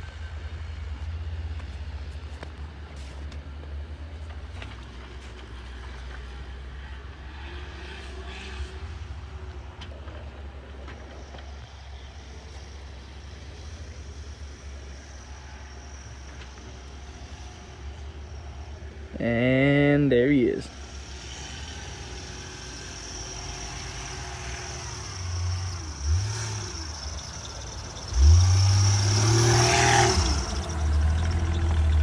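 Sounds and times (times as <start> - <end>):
vehicle engine rumbling: 0.0 - 32.0.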